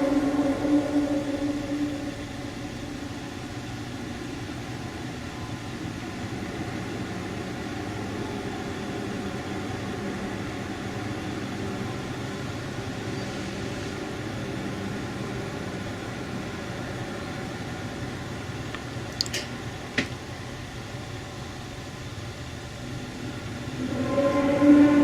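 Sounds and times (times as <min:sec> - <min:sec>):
hissing haze: 0:00.0 - 0:06.2
steady low drone: 0:00.0 - 0:07.0
two-tone hum: 0:00.0 - 0:07.0, 0:23.6 - 0:25.0.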